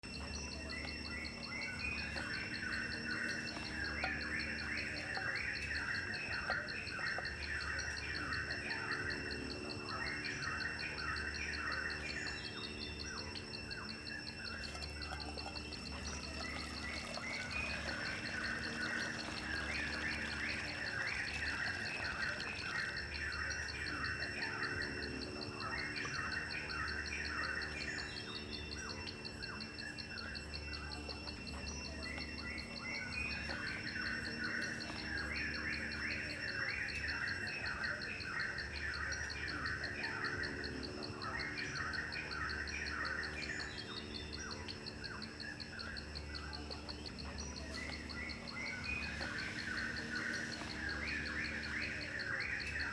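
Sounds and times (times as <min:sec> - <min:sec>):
birds chirping: 0:00.0 - 0:52.9
insects trilling: 0:00.0 - 0:52.9.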